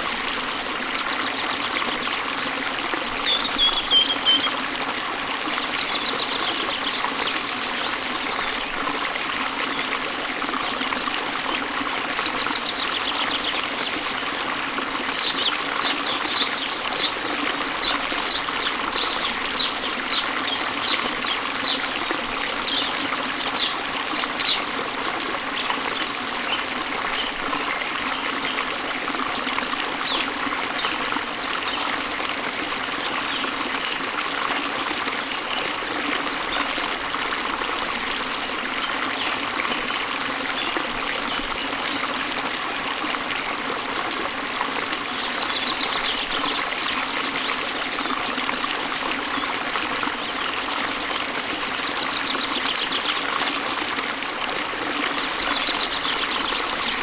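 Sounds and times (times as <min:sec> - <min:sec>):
bird chirping: 0:03.2 - 0:04.5.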